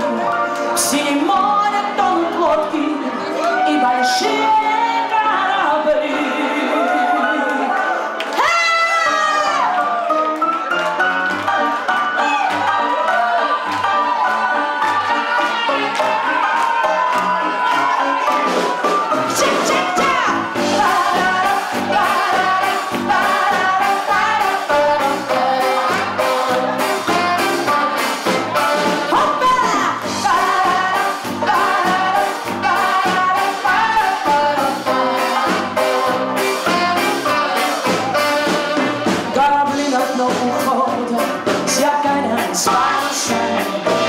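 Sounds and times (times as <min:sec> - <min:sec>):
jazz band playing: 0:00.0 - 0:44.0.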